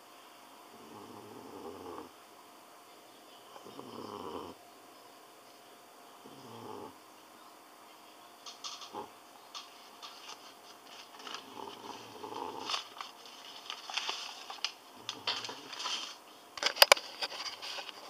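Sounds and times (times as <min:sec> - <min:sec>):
cat snoring: 0:00.7 - 0:02.2, 0:03.6 - 0:04.6, 0:06.2 - 0:07.0, 0:08.9 - 0:09.1, 0:11.4 - 0:12.8.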